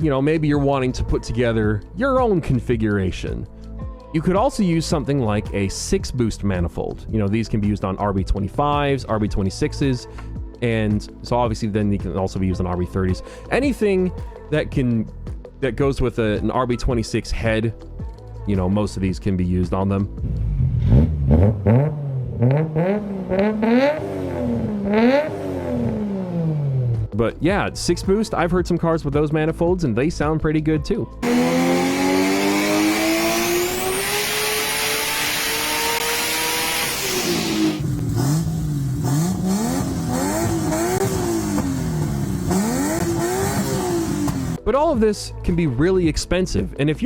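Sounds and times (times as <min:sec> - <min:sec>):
car engine revving: 0:20.2 - 0:27.1, 0:31.2 - 0:44.6.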